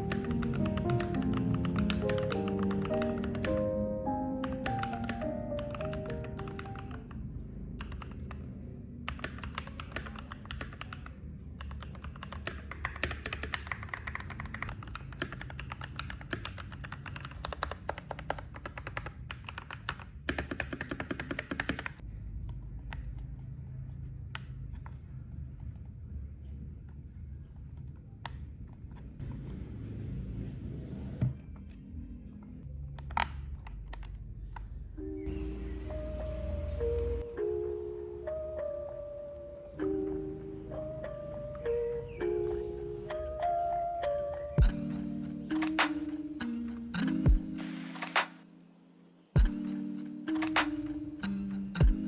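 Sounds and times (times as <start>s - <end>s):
mechanical keyboard typing: 0.0s - 3.8s, 4.4s - 7.2s, 7.8s - 22.0s, 44.6s - 48.3s
background music: 0.0s - 7.5s, 34.9s - 52.0s.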